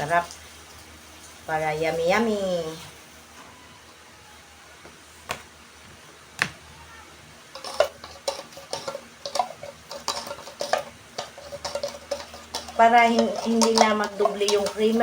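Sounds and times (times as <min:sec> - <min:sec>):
spoon clinking and scraping bowl: 0:07.5 - 0:15.0
spoon knocking on bowl: 0:07.6 - 0:15.0.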